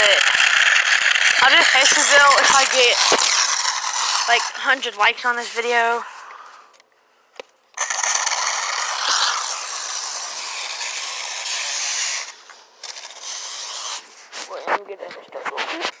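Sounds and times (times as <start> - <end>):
loud scraping hiss: 7.8 - 14.6
soft rustling noise: 14.0 - 16.0.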